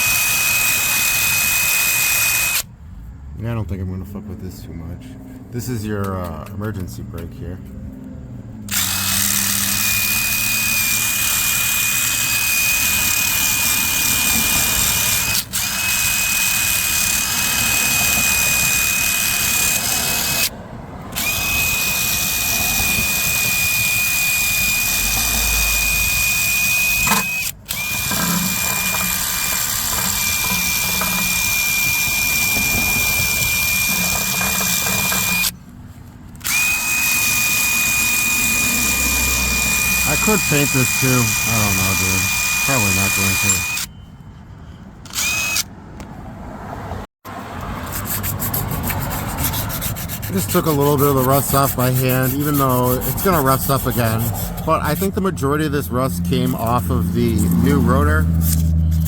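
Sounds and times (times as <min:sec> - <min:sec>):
power tool whining: 0:00.0 - 0:02.7, 0:08.7 - 0:20.5, 0:21.1 - 0:35.6, 0:36.4 - 0:43.9, 0:45.1 - 0:45.7, 0:48.9 - 0:59.0.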